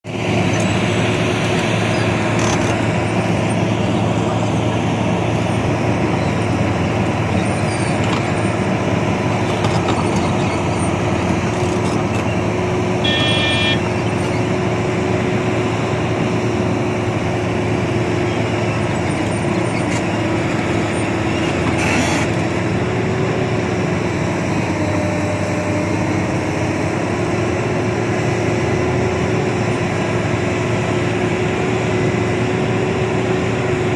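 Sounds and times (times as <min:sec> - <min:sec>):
road noise: 0:00.0 - 0:33.9
truck engine running: 0:00.1 - 0:33.9
brief high-pitched tone: 0:13.0 - 0:14.0.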